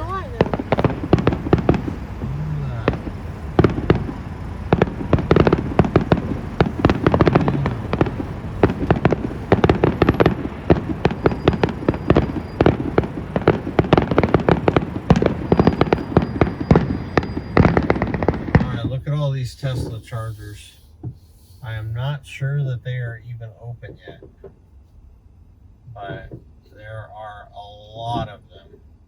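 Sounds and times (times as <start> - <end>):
fireworks cracking and popping: 0.0 - 22.1, 23.8 - 24.6.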